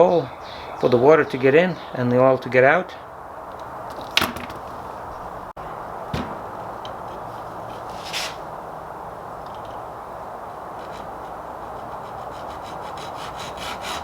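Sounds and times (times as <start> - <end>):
dull knock: 6.1 - 6.5
short scrape: 7.7 - 8.5.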